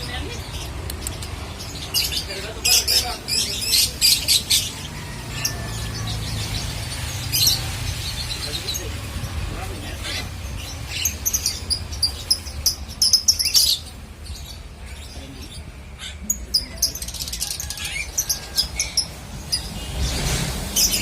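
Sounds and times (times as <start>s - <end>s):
songbirds chirping: 0.0s - 21.0s.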